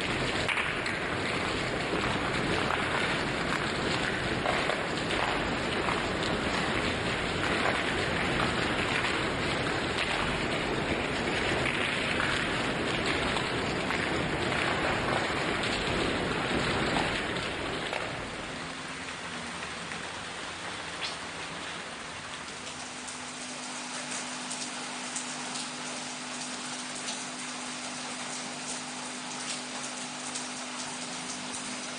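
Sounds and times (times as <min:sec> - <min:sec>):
heavy rain hiss: 0:00.0 - 0:31.9
raindrops ticking: 0:00.0 - 0:31.9.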